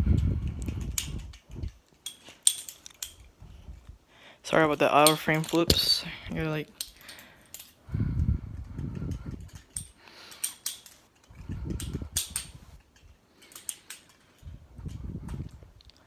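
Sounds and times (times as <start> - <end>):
butterfly knife metallic clicks: 9.8 - 14.2.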